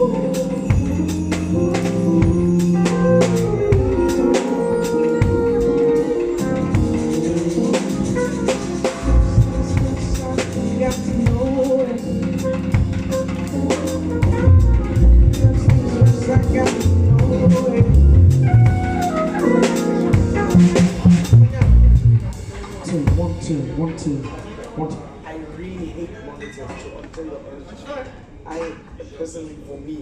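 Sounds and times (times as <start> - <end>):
drum kit hits: 0.0 - 23.5
held chords: 0.0 - 23.5
deep bass notes: 0.0 - 23.6.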